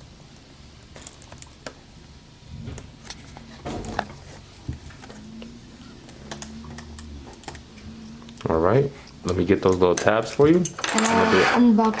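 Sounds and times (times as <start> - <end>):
plastic and cardboard rustling: 2.5 - 5.9.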